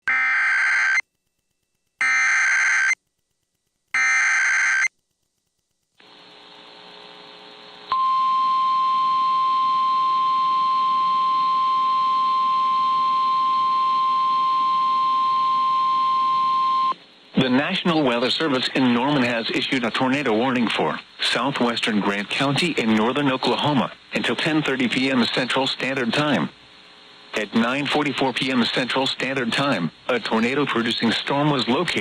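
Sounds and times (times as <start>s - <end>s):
faint radio hiss: 5.2s - 7.9s, 9.7s - 32.0s
steady alarm tone: 7.9s - 17.0s.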